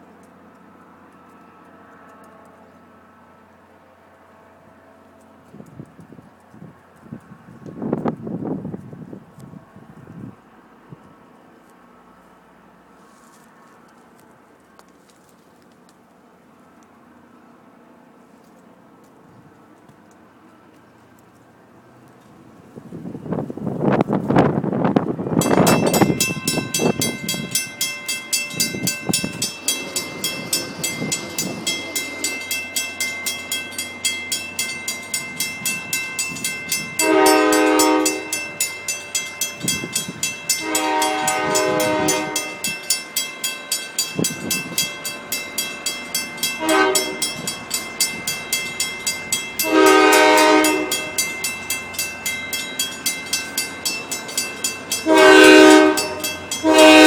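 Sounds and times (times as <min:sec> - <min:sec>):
wheels clicking over rail joints: 0:23.4 - 0:57.0
train horn: 0:37.0 - 0:38.7, 0:40.5 - 0:42.8, 0:46.5 - 0:47.4, 0:49.6 - 0:51.3, 0:55.0 - 0:57.0.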